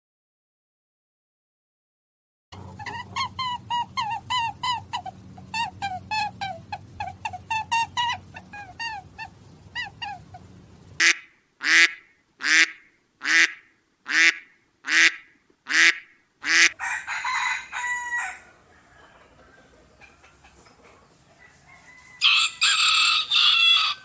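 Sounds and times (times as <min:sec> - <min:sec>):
loud bird honking calls: 0:11.0 - 0:18.5.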